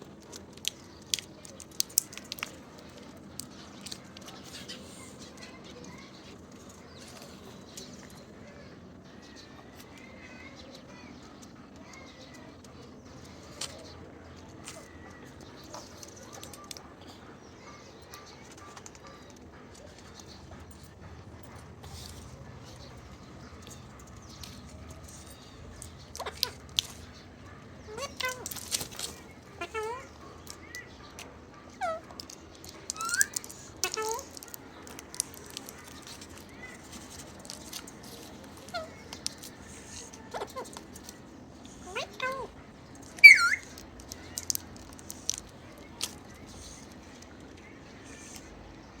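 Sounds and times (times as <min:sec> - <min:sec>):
parrots chirping softly: 0:00.0 - 0:49.0
parrots chirping: 0:23.5 - 0:34.5, 0:41.8 - 0:46.0.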